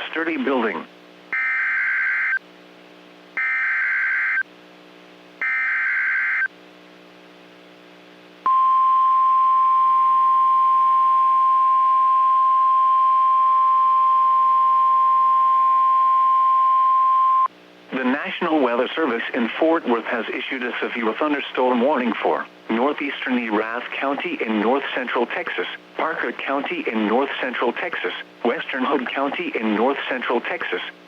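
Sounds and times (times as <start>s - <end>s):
steady warning alarm tone: 3.4s - 4.4s, 5.4s - 6.5s.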